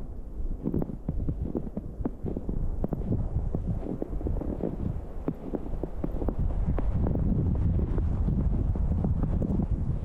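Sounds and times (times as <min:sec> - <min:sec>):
wind buffeting microphone: 0:00.0 - 0:10.0
footsteps crunching in snow: 0:00.6 - 0:08.4.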